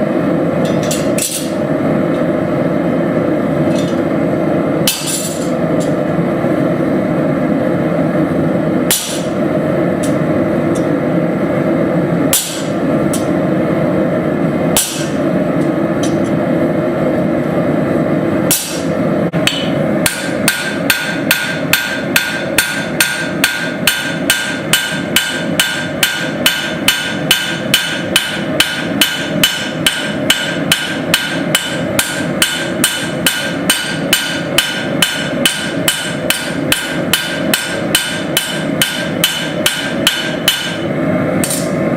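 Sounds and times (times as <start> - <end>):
hammer striking steel on anvil: 0.6 - 1.6, 4.8 - 6.1, 8.8 - 9.4, 12.3 - 13.4, 14.7 - 15.2, 18.5 - 41.8.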